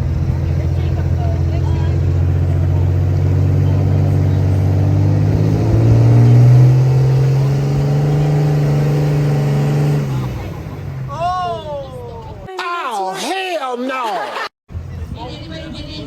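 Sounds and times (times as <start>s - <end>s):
diesel pickup engine at high revs: 0.0s - 12.5s.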